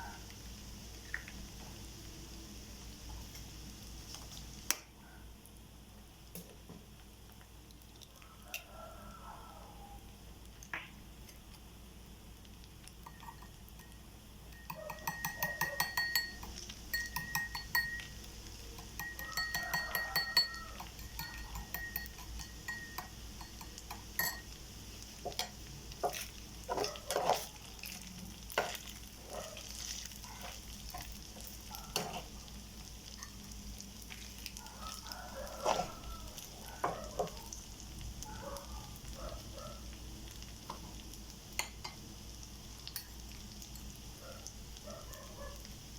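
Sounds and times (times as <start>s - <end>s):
rice sizzling in a pan: 0.0s - 45.9s
spatula scraping a pan: 26.0s - 27.6s, 29.7s - 32.3s, 35.5s - 36.0s.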